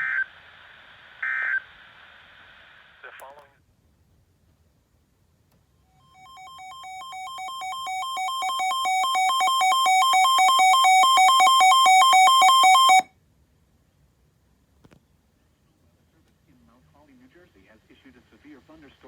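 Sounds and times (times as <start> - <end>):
two-tone electronic alert beeps: 6.0 - 13.0.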